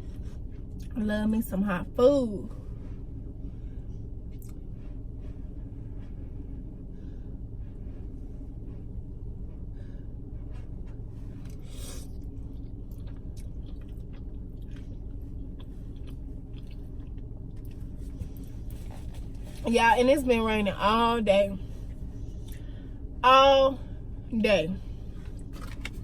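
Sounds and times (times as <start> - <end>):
steady low hum: 0.0 - 26.0
person chewing food: 11.4 - 19.7, 25.2 - 26.0.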